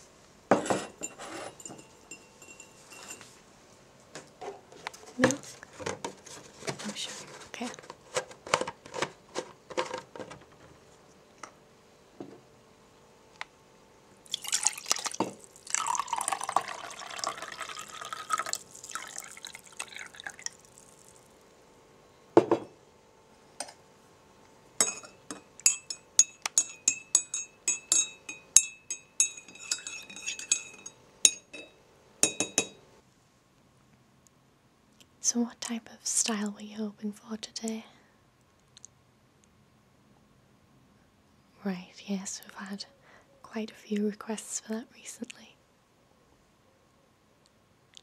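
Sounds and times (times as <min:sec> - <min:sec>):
teaspoon stirring in china cup: 0:01.0 - 0:03.3, 0:24.8 - 0:31.7
liquid pouring into a cup: 0:14.2 - 0:21.3
knock: 0:22.4 - 0:22.7.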